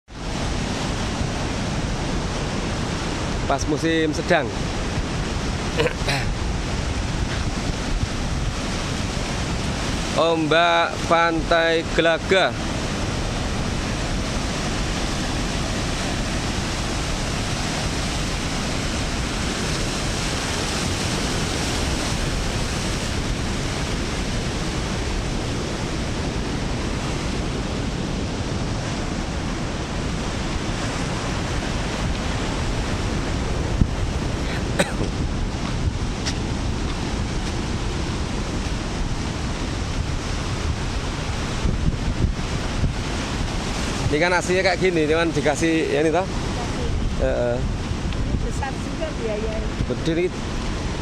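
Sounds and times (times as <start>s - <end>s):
ocean surf breaking: 0.1s - 51.0s
wind buffeting microphone: 0.1s - 51.0s.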